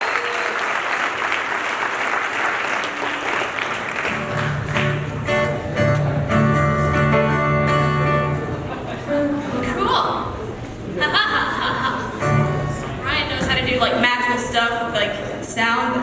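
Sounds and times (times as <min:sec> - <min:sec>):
crowd applauding: 0:00.0 - 0:06.1
band guitar and bass: 0:04.1 - 0:10.9, 0:12.0 - 0:14.0.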